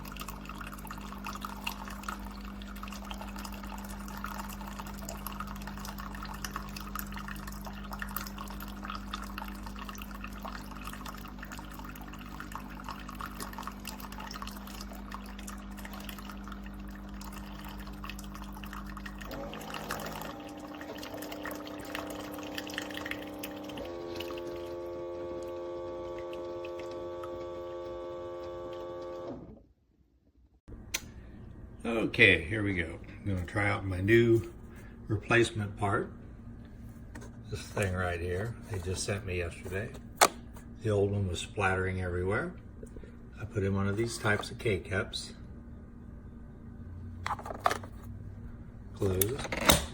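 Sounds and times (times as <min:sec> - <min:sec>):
coffee dripping into cup: 0:00.0 - 0:29.2
coffee maker hum: 0:00.0 - 0:29.7, 0:30.7 - 0:49.9.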